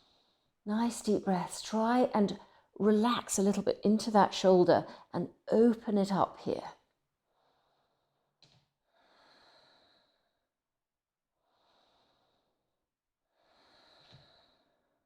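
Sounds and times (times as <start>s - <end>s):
soft slow breathing: 7.3s - 8.3s, 8.9s - 10.4s, 11.4s - 12.6s, 13.3s - 15.0s.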